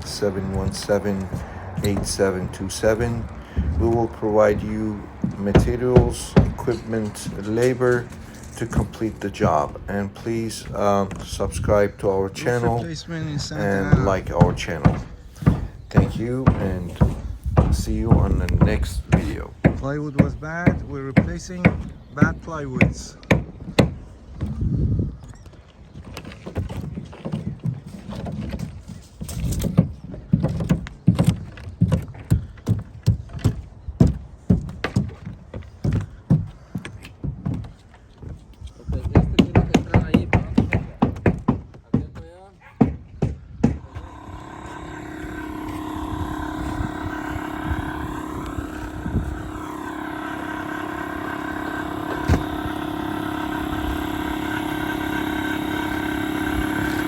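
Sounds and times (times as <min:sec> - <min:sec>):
knocks and thuds on roof: 0:00.0 - 0:12.0, 0:12.7 - 0:24.7, 0:26.4 - 0:48.7
machine humming: 0:00.0 - 0:19.6, 0:43.8 - 0:57.0.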